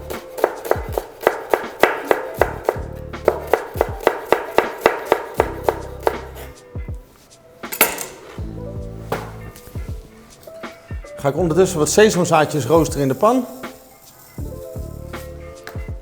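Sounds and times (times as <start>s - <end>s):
knife chopping on cutting board: 0.1s - 6.6s.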